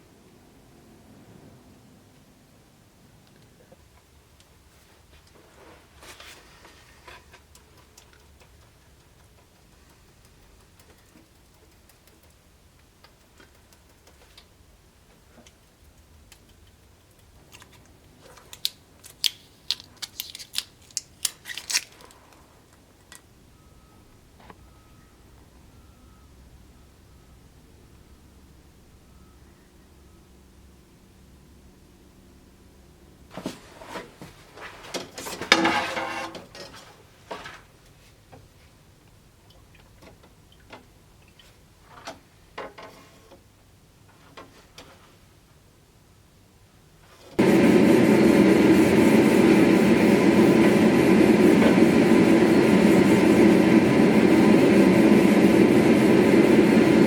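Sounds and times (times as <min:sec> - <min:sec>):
sharp clicks: 0:07.5 - 0:14.5, 0:15.4 - 0:18.0.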